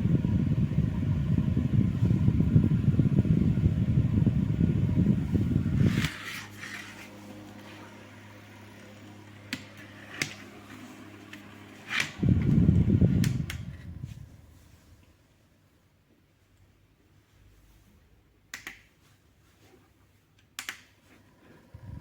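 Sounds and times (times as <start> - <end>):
fan air rumbling on microphone: 0.0 - 15.4, 21.6 - 22.0
electric fan humming: 0.0 - 15.7, 20.6 - 22.0.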